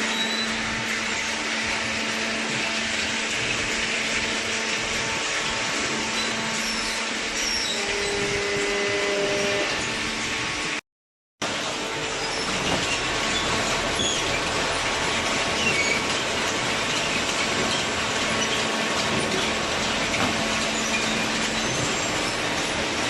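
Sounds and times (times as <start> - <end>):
baler machinery running: 0.0 - 10.8, 11.4 - 23.0
high squeaks and rattles: 3.3 - 10.0, 12.0 - 23.0.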